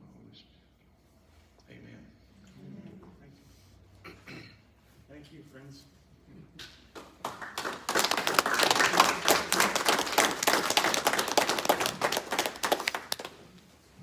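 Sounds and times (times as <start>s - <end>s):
congregation clapping: 6.6s - 13.8s.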